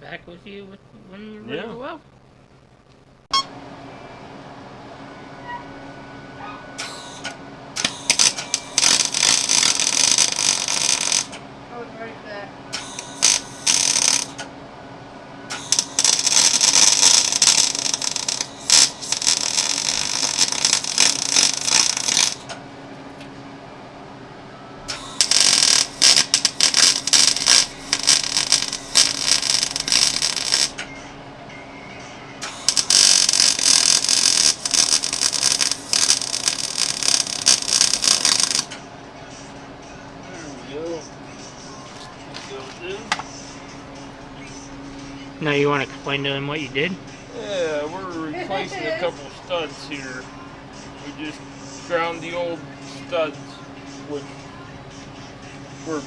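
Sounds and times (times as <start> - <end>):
electric welder crackling: 6.8 - 11.4, 12.7 - 14.5, 15.5 - 22.6, 24.9 - 30.9, 32.4 - 38.8.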